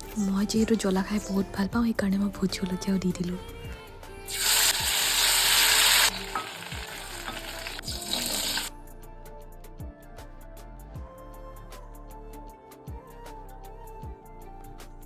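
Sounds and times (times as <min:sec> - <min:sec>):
chicken sizzling in a pan: 0:04.3 - 0:08.7.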